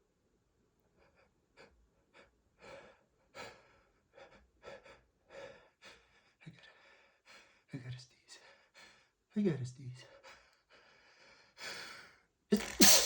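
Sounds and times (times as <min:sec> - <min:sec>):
man gasping breaths: 0:10.2 - 0:13.0.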